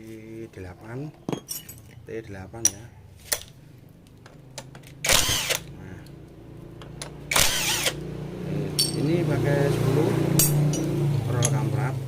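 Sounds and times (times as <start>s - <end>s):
power tool spinning: 5.0s - 5.8s, 7.3s - 8.0s.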